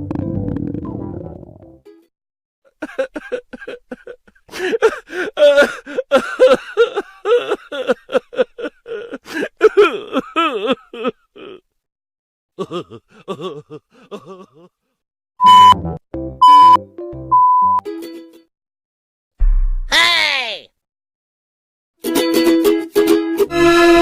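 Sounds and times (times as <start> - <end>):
censor bleep beeps: 15.4 - 15.8, 16.4 - 17.8.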